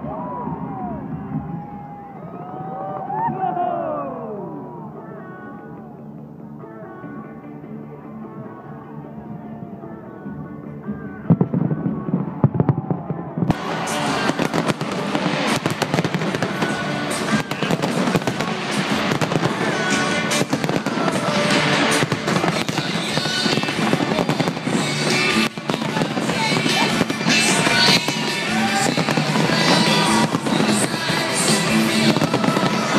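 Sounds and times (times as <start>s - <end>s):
music playing: 0.0s - 32.9s
fireworks booming and crackling: 10.9s - 32.9s.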